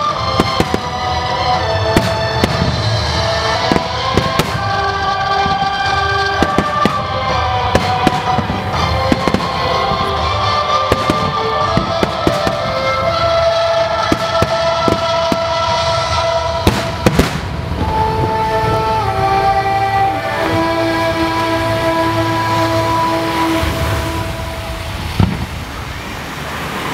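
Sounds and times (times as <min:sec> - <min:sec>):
fireworks bangs: 0:00.0 - 0:18.8, 0:23.3 - 0:26.1
music with long held notes: 0:00.0 - 0:25.9.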